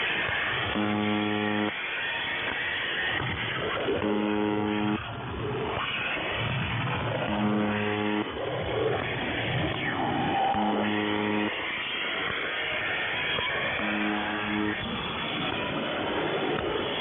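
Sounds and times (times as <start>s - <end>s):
low buzz tone: 0.0s - 2.2s, 3.1s - 5.4s, 6.8s - 8.5s, 10.3s - 12.0s, 13.4s - 15.6s
harsh noise music over radio: 3.0s - 12.9s.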